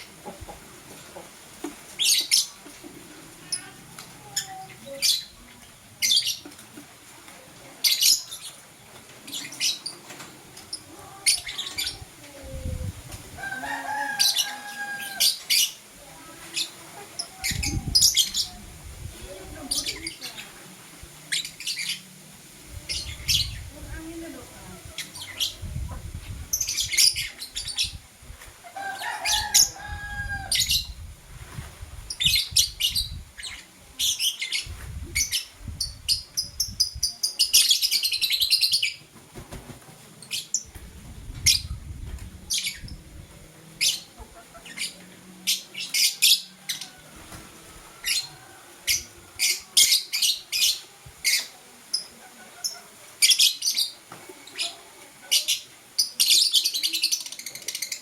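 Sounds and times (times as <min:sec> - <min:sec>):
lovebirds chirping: 0:13.4 - 0:22.1.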